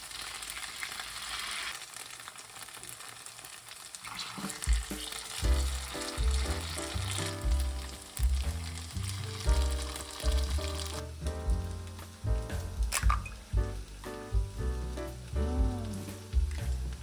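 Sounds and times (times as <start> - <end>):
food sizzling in a pan: 0.0 - 17.0
background music with bass line: 4.7 - 17.0.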